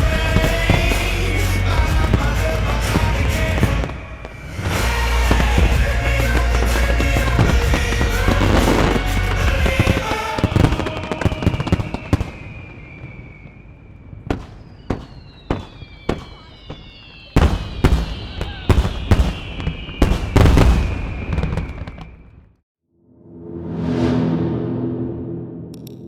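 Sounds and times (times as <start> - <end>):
music: 0.0 - 11.3
firework bangs: 0.0 - 22.5
firework whistles falling in pitch: 6.6 - 22.5.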